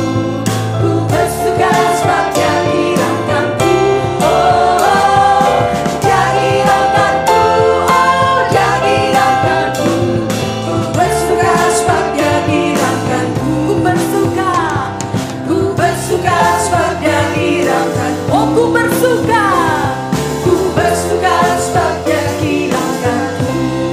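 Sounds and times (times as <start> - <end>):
band playing a praise song: 0.0 - 23.9
people singing: 0.0 - 23.9.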